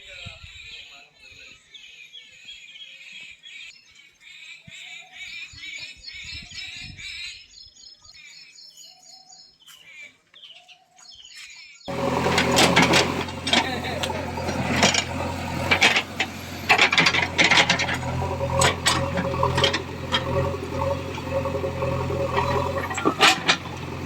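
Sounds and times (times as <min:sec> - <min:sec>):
small birds chirping: 0:00.1 - 0:24.0
backhoe diesel engine rattling: 0:11.9 - 0:24.0.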